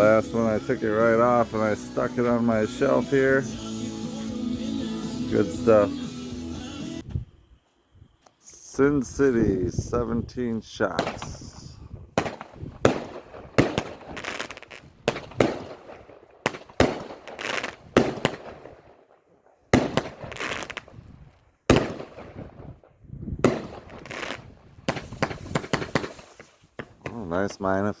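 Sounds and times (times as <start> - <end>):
firework shot reports: 10.8 - 14.2, 23.4 - 26.4
crackling hissing firework trails: 10.8 - 27.6.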